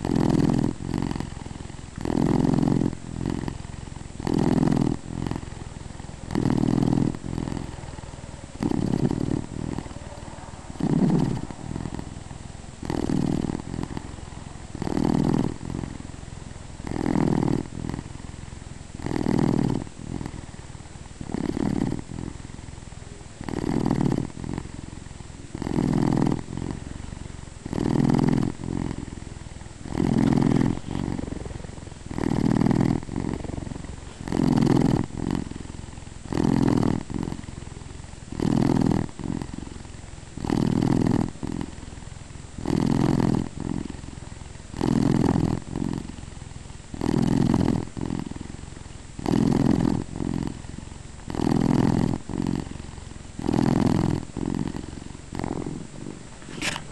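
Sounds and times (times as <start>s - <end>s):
cat purring and snoring: 0.0s - 56.9s.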